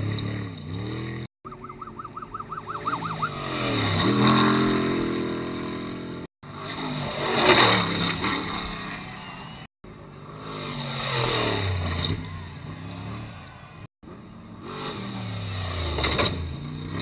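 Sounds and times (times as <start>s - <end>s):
race trucks passing: 0.0s - 13.9s
warbling high whistle: 1.5s - 3.6s.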